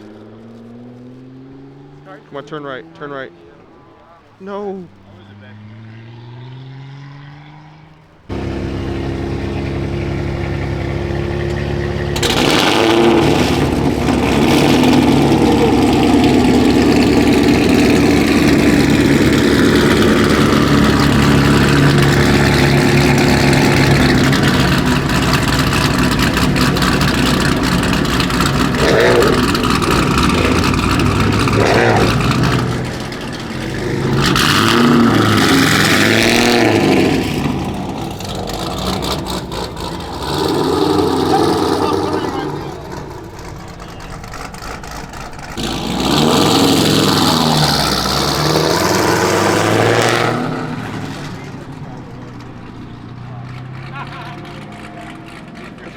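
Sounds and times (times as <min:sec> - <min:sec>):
car engine running loudly: 0:00.0 - 0:55.9.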